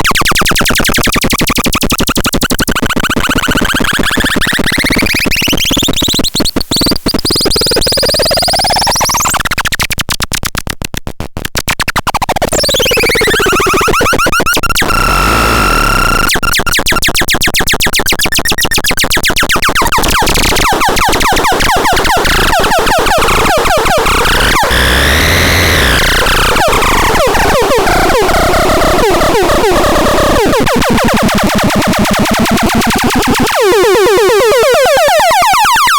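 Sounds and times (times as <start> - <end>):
harsh sweeping synthesizer noise: 12.1 - 16.5, 19.9 - 35.9.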